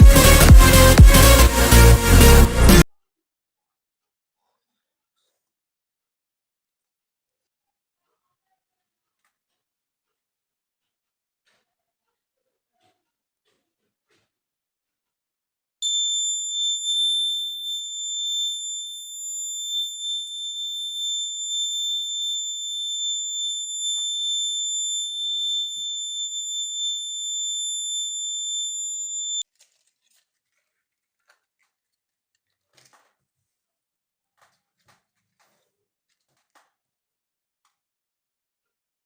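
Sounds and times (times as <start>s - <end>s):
fire alarm buzzer tone: 0.0s - 2.8s, 15.8s - 29.4s.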